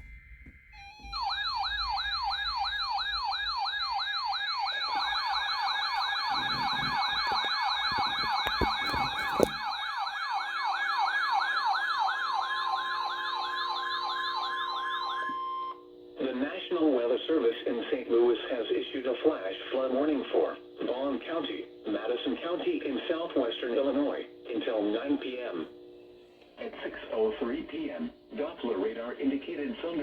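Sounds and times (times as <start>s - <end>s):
electronic yelp siren: 0.0s - 15.9s.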